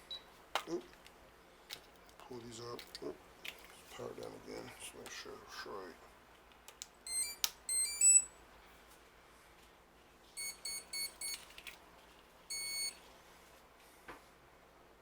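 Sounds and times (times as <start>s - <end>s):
electronic power-up beeps: 7.1s - 8.3s, 10.4s - 11.4s, 12.5s - 13.0s.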